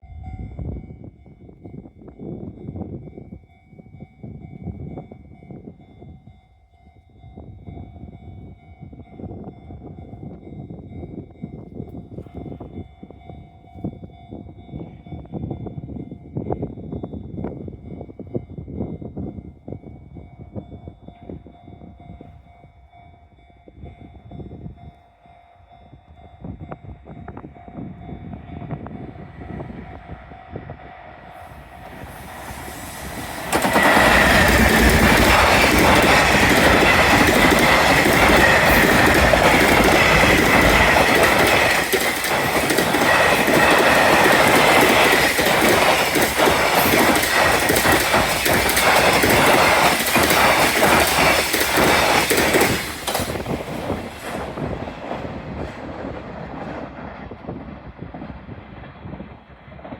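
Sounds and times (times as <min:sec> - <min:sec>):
freight train rumbling past: 0:26.1 - 0:59.9
wheels clattering over rail joints: 0:32.0 - 0:57.0.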